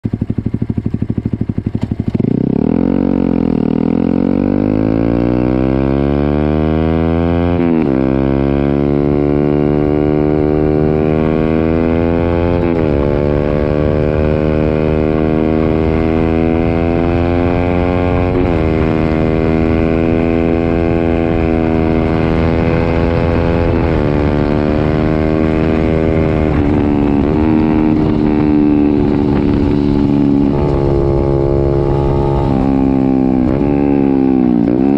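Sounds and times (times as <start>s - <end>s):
motorcycle engine accelerating: 0.0s - 34.9s.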